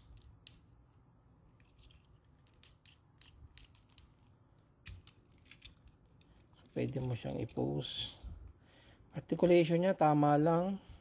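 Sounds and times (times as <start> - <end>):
toy figure joints clicking: 1.6 - 4.1.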